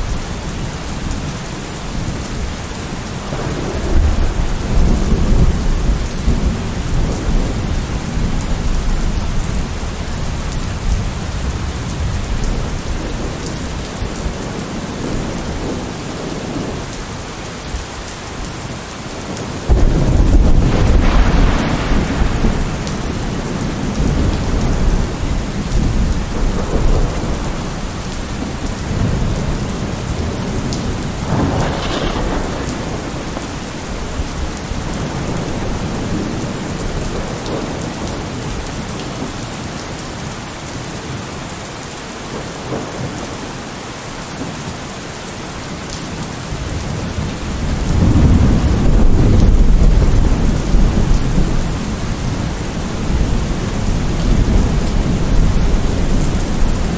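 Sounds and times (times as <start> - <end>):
heavy rain: 0.0 - 56.9
rolling thunder: 3.2 - 17.0, 19.3 - 39.2, 46.5 - 56.9
sharp thunder crack: 19.7 - 25.2, 31.2 - 36.3.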